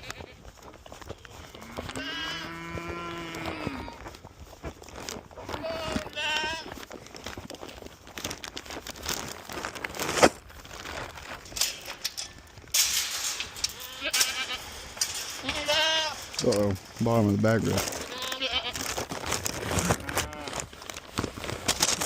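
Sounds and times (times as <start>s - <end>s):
goat bleating: 0.0s - 0.6s, 1.6s - 4.1s, 5.5s - 6.8s, 13.7s - 16.4s, 17.9s - 19.0s
rustling: 0.0s - 22.0s.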